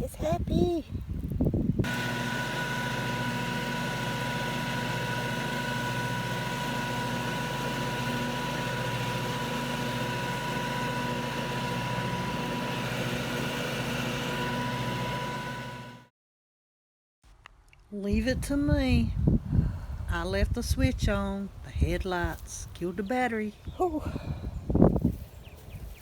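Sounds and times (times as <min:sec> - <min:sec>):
riding lawn mower engine: 0:01.8 - 0:16.1.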